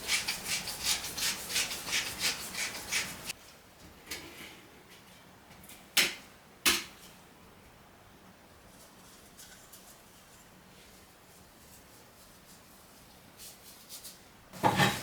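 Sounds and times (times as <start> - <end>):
quick even kitchen strokes: 0.0 - 3.4.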